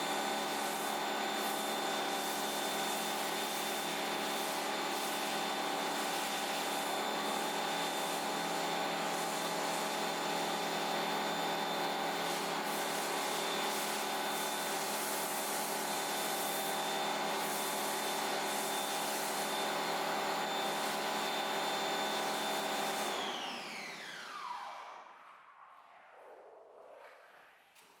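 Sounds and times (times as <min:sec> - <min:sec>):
pressure washer motor running: 0:00.0 - 0:24.0
hissing water spray: 0:12.2 - 0:19.5
motor winding down whine: 0:18.2 - 0:27.3.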